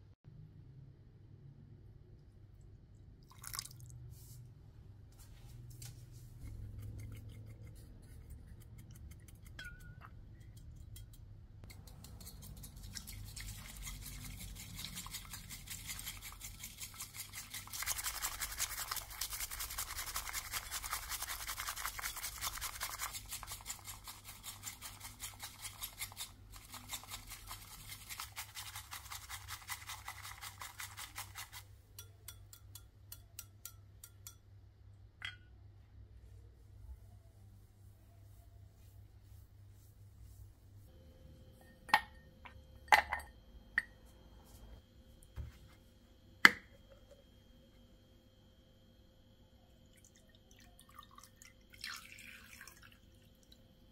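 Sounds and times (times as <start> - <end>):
whisk beating tea in a bowl: 6.4 - 34.4.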